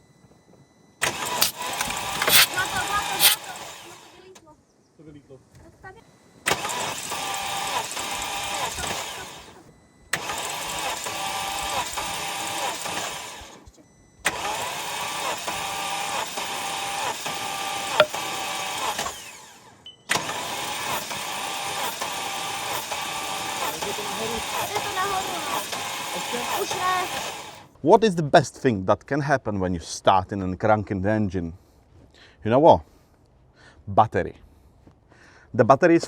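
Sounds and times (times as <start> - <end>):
car engine cranking on starter: 1.0 - 4.4, 6.5 - 27.7.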